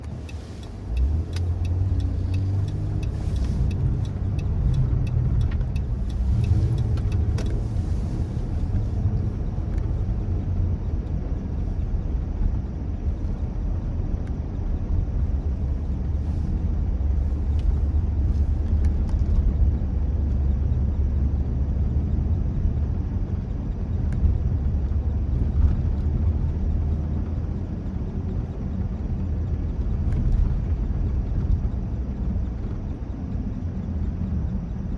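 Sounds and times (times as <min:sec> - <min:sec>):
sharp ticks: 0:00.0 - 0:07.6
car road and engine rumble: 0:00.0 - 0:34.9.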